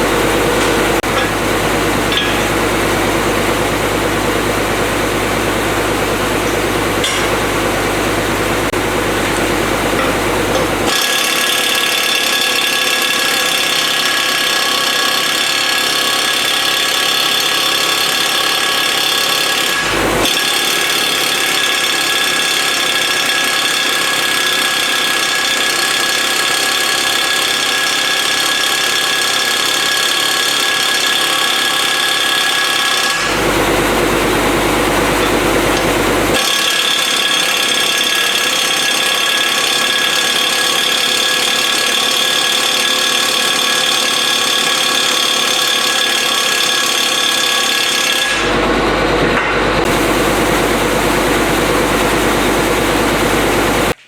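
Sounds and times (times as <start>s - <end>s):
air compressor engine running: 0.0s - 54.0s
rough noisy engine burst: 48.2s - 54.0s.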